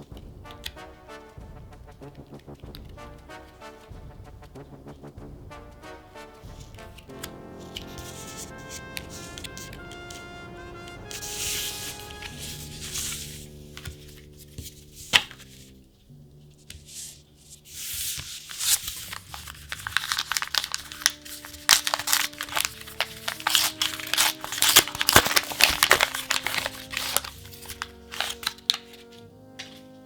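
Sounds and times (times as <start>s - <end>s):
soft background music: 0.0s - 30.0s
foil wrapper tearing and crinkling: 11.1s - 15.6s, 17.8s - 29.7s.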